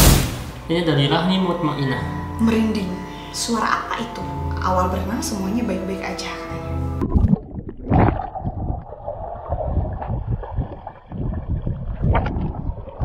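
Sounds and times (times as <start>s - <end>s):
muffled underwater churning water: 7.0s - 13.0s.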